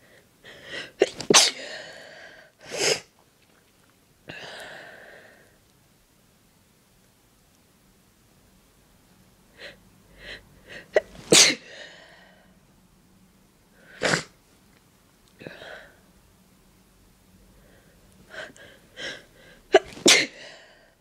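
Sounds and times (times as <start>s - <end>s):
person sneezing: 1.0s - 2.0s, 2.6s - 3.1s, 10.9s - 12.0s, 13.9s - 14.4s, 19.7s - 20.7s.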